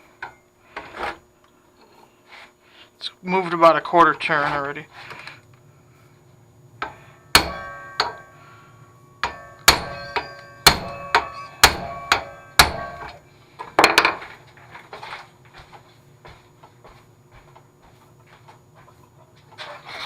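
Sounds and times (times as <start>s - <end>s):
hammer striking metal: 6.8s - 13.2s.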